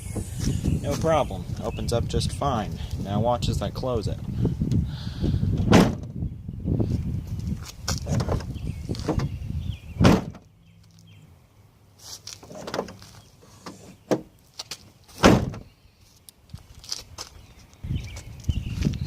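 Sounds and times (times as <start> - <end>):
car liftgate slamming: 5.6 - 6.1, 10.0 - 10.4, 15.2 - 15.6.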